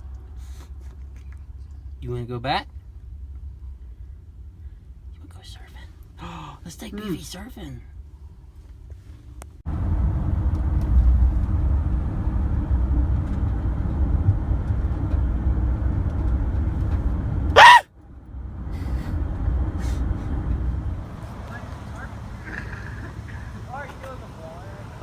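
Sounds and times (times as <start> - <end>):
car road rumble: 0.0 - 25.0
short high-pitched cry: 17.6 - 17.9.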